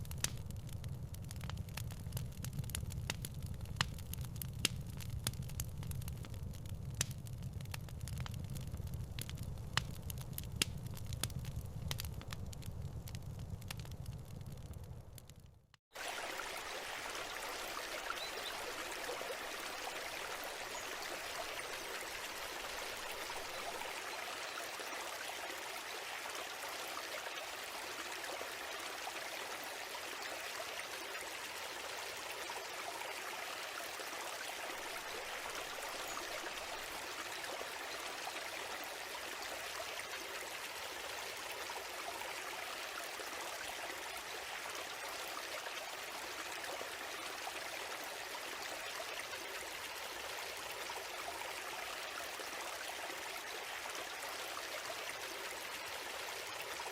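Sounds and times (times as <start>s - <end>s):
stream babbling over stones: 15.9s - 56.9s.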